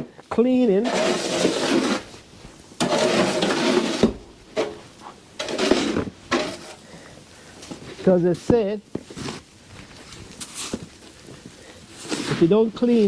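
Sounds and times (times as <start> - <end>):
snow scraping: 0.7 - 6.9, 9.1 - 13.0.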